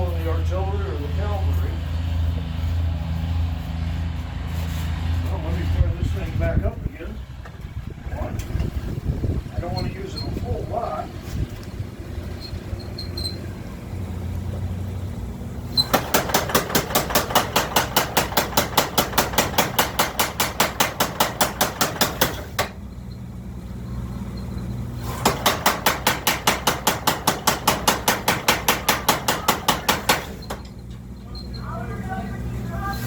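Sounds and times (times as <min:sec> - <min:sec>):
power hammer pounding: 0:15.8 - 0:22.8, 0:25.0 - 0:30.8.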